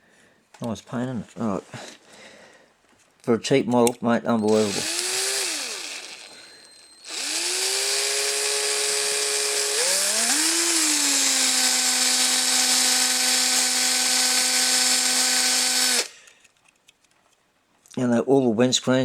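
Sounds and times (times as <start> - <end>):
small electric drill motor running: 4.4 - 16.1.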